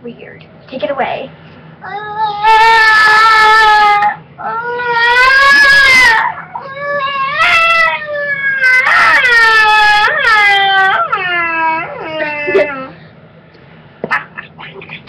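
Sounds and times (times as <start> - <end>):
child whining: 1.8 - 13.0.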